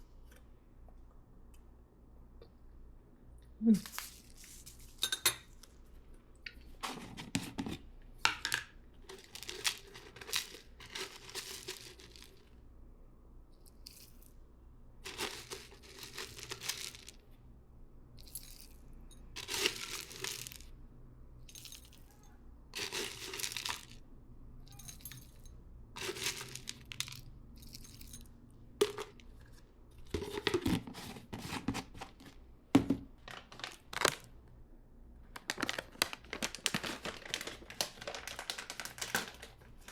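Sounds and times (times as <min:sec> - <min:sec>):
rustling handling noise: 0:03.8 - 0:12.5, 0:15.0 - 0:17.2, 0:19.4 - 0:20.7, 0:22.8 - 0:24.0, 0:26.0 - 0:34.4, 0:35.2 - 0:39.9.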